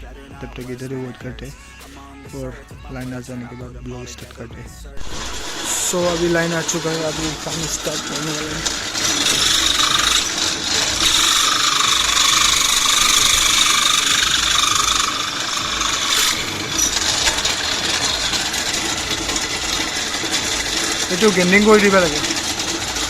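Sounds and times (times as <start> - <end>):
electric power tool whining: 5.0 - 23.0.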